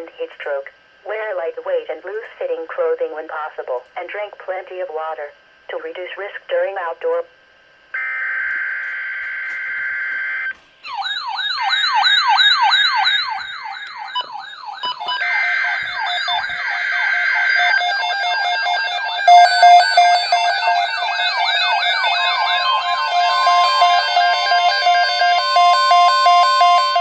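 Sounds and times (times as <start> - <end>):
buzzy header data tones: 7.9 - 27.0
electronic siren wails: 8.0 - 27.0
steady alert tones: 8.0 - 27.0.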